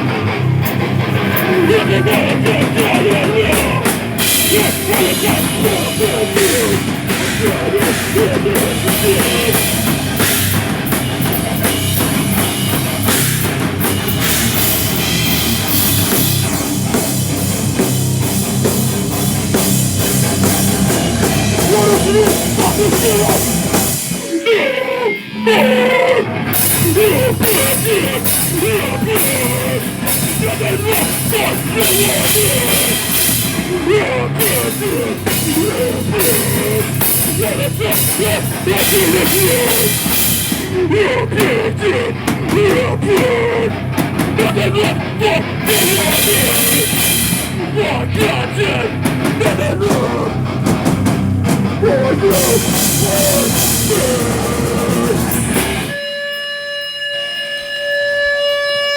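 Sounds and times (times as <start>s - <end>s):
driving drum kit: 0.0s - 56.0s
heavy rock band playing: 0.0s - 56.5s.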